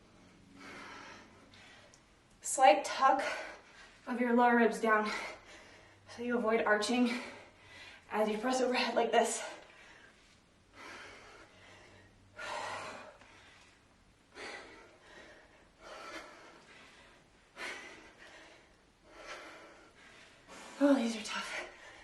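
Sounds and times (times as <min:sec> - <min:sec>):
woman breathing heavily: 0:00.0 - 0:22.0.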